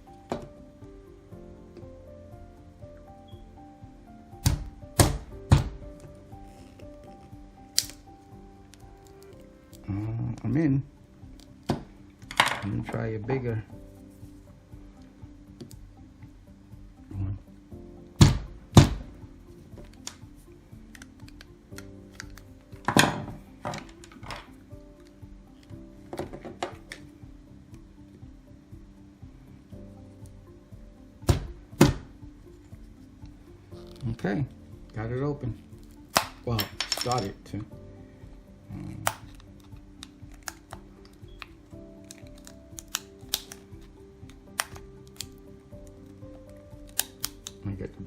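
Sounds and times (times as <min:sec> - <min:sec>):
background music: 0:00.0 - 0:48.0
plastic shell cracking and clicking: 0:07.8 - 0:08.0, 0:20.9 - 0:23.0, 0:39.0 - 0:43.6, 0:44.3 - 0:45.4, 0:46.8 - 0:47.6.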